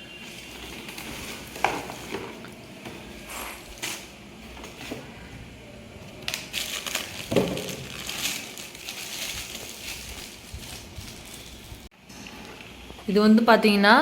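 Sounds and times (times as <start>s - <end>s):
packaging crinkling and rustling: 0.2s - 2.5s, 6.1s - 11.9s.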